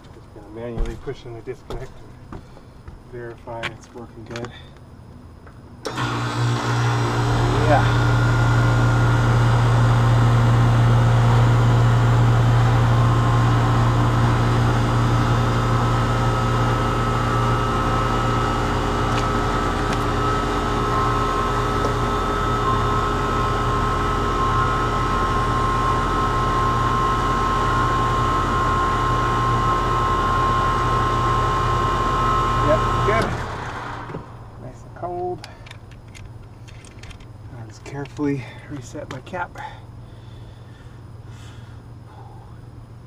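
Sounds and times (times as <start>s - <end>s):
faint whine: 0.0s - 5.9s, 32.6s - 43.0s
air conditioner unit humming: 0.0s - 43.0s.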